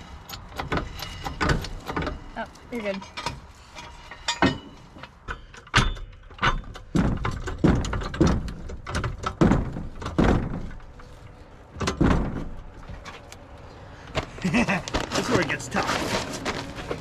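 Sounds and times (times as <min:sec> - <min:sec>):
heavy tool thunks and clunks: 0:02.9 - 0:11.1, 0:11.8 - 0:13.2.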